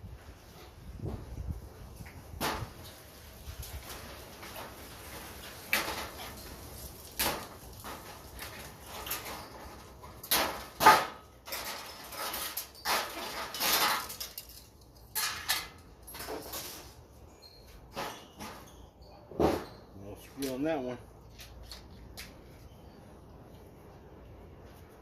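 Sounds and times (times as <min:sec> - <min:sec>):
metal parts clanking and scraping: 0:03.9 - 0:19.9.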